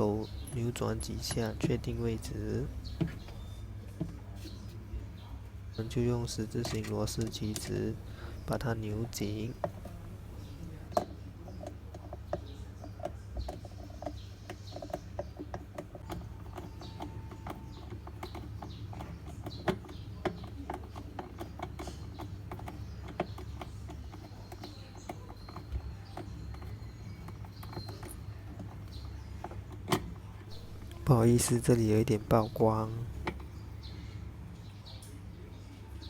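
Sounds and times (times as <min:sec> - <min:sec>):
steady low hum: 0:00.0 - 0:20.4, 0:21.6 - 0:35.5
screwdriver clicking and scraping: 0:06.4 - 0:33.6.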